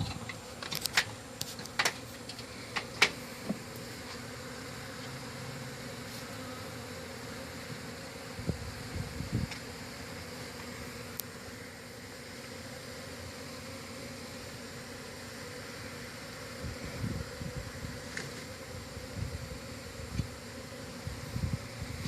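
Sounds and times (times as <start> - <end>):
sharp clicks and knocks: 0.0 - 3.6
bees buzzing: 0.0 - 22.0.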